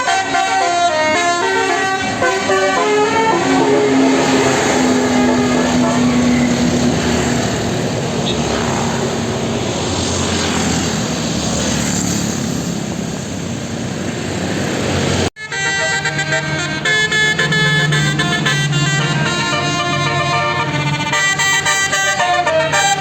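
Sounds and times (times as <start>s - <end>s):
musical bus horn note: 0.0s - 7.6s, 15.4s - 23.0s
bus diesel engine running: 0.0s - 23.0s.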